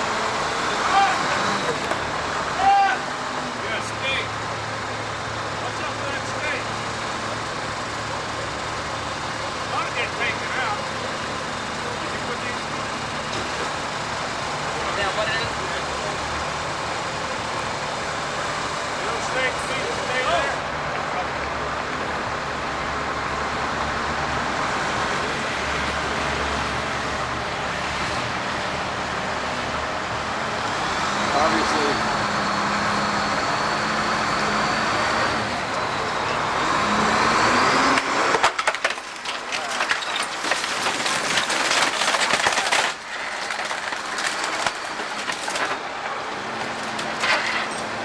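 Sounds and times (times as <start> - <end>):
breaking wood and debris crunching: 37.8 - 48.0.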